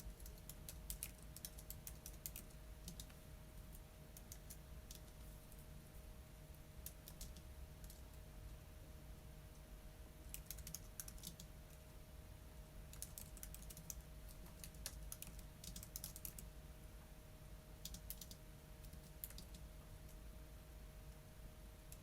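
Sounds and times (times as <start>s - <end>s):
keyboard typing: 0.0s - 3.2s, 4.2s - 5.2s, 6.8s - 8.1s, 10.3s - 11.5s, 12.9s - 16.5s, 17.8s - 19.7s
faint steady hum: 0.0s - 22.0s.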